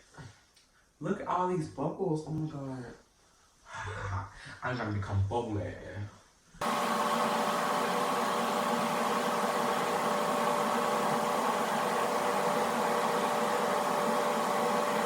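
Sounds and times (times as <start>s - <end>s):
bathtub jet pump running: 6.6s - 15.0s.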